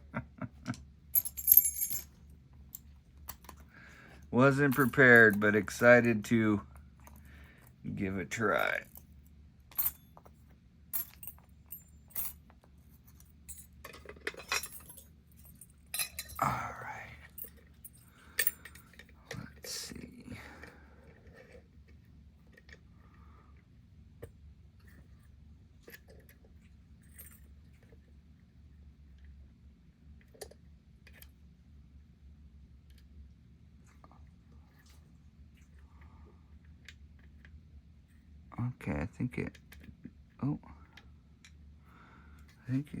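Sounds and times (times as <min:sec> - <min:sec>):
low steady hum: 0:00.0 - 0:43.0
light metal jingle: 0:01.1 - 0:02.2, 0:04.4 - 0:06.0, 0:09.7 - 0:20.1, 0:27.0 - 0:27.7
metal tools clinking on padlock: 0:01.2 - 0:02.1, 0:04.4 - 0:05.6, 0:09.7 - 0:10.2, 0:11.0 - 0:12.5, 0:13.1 - 0:16.6, 0:17.2 - 0:19.9.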